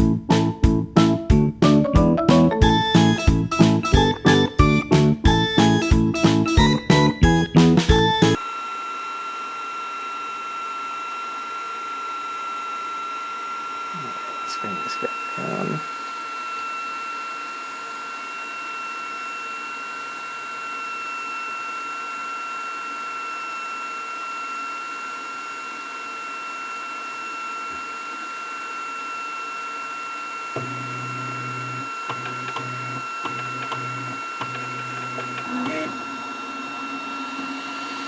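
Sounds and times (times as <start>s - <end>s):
cooling fans whirring: 13.7s - 16.3s, 30.5s - 38.0s
low motor hum: 30.6s - 38.0s.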